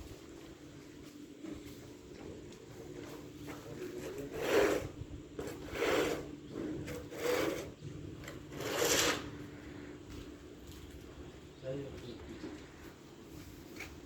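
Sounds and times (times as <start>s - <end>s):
rasping scrapes: 3.9s - 9.4s.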